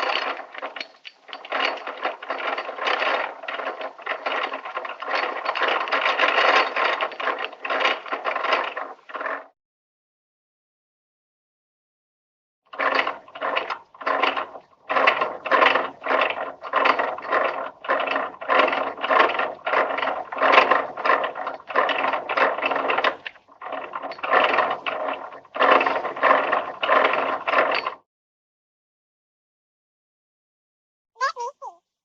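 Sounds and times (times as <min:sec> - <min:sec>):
ratcheting mechanical clatter: 0:00.0 - 0:09.5, 0:12.7 - 0:28.0.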